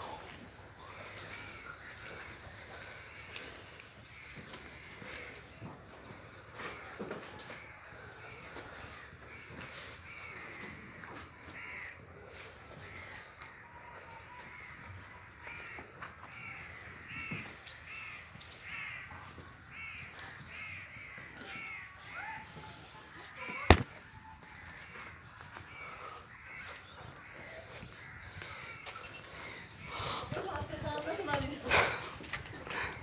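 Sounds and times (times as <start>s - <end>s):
crows cawing: 1.0s - 5.3s, 9.6s - 12.0s, 14.5s - 19.1s, 25.7s - 30.2s.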